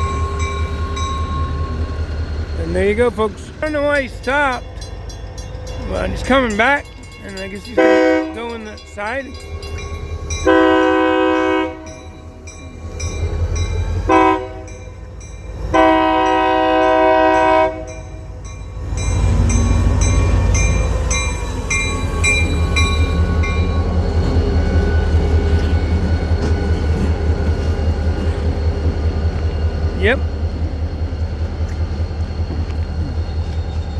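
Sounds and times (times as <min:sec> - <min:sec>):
diesel engine rumbling: 0:00.0 - 0:33.9
bell ringing: 0:03.6 - 0:10.6
locomotive horn blasts: 0:07.8 - 0:08.6, 0:10.4 - 0:12.0, 0:14.1 - 0:14.8, 0:15.7 - 0:18.0.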